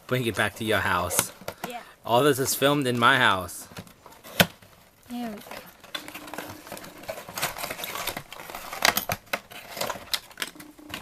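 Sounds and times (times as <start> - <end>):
packaging rustling: 3.6 - 11.0.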